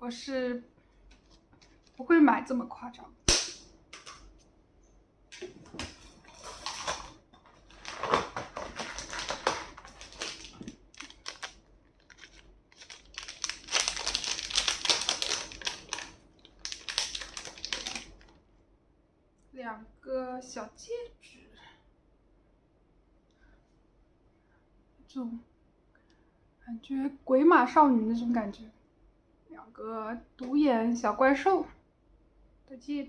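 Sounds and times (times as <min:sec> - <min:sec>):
packaging crinkling and rustling: 0:05.3 - 0:18.4.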